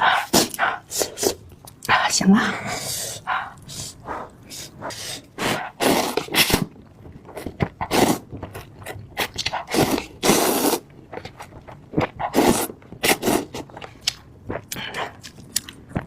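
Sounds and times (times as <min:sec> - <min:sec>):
noodles being slurped: 0:04.9 - 0:06.7, 0:07.3 - 0:13.9.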